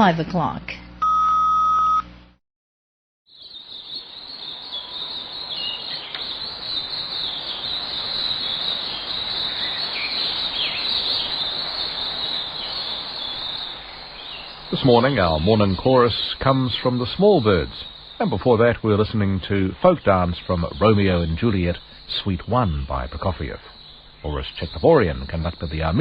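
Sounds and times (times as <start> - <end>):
small birds chirping: 3.3 - 26.0
steady hiss: 6.0 - 26.0
radio time signal tone: 14.7 - 26.0.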